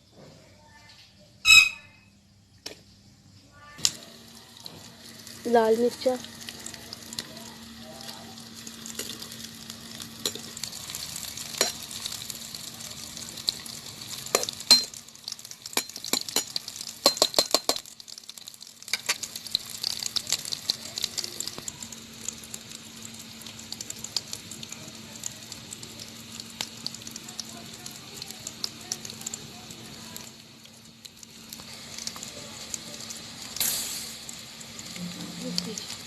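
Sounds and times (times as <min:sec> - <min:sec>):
onions sizzling in hot oil: 0:02.6 - 0:36.0
stirring clicks against pan: 0:14.3 - 0:21.8.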